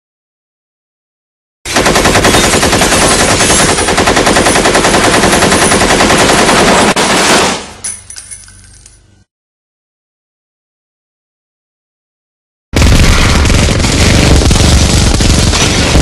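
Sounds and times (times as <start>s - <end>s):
machine gun firing rapid burst: 1.7s - 7.6s, 12.8s - 16.0s.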